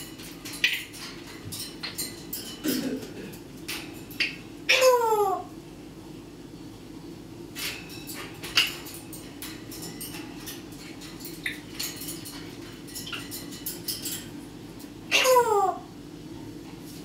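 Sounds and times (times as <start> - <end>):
parrot high chirps: 15.1 - 15.9.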